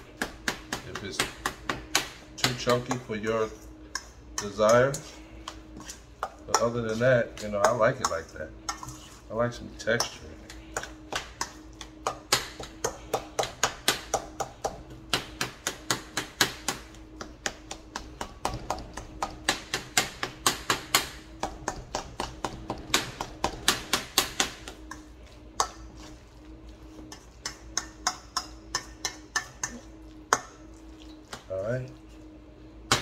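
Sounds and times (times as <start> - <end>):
utensil tapping a bowl: 3.9 - 5.6, 6.2 - 9.0, 9.9 - 26.1, 27.0 - 31.5.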